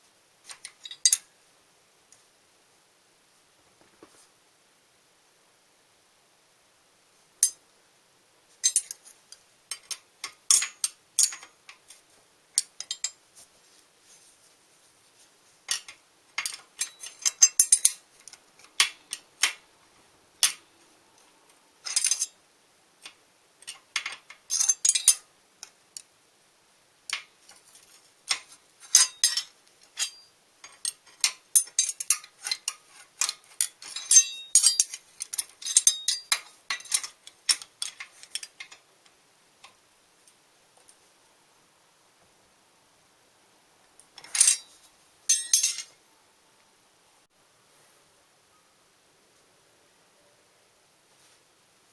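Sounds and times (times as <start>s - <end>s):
metal tools clinking: 8.6s - 9.0s, 9.7s - 11.5s, 12.6s - 13.2s, 15.7s - 18.0s, 21.9s - 22.4s, 23.6s - 25.2s, 28.3s - 38.8s, 44.2s - 46.0s.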